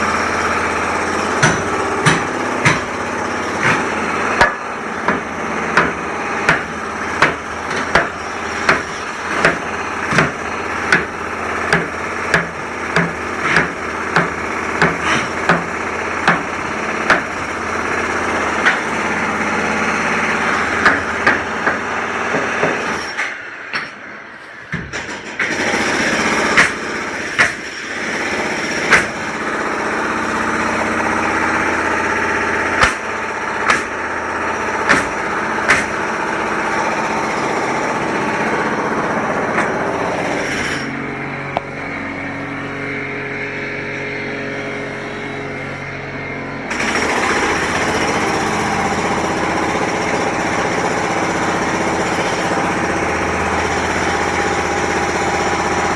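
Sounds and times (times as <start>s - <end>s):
construction machinery running: 0.0s - 55.9s
sharp metal clanks and knocks: 1.3s - 17.4s, 20.8s - 24.1s, 24.7s - 28.0s, 32.6s - 34.0s, 34.7s - 36.0s.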